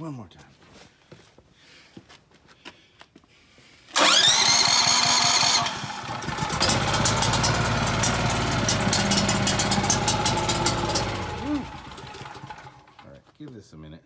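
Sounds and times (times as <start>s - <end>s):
electric starter cranking engine: 3.9s - 13.1s
generator engine running: 4.0s - 13.0s
rapid ticking: 4.9s - 13.0s.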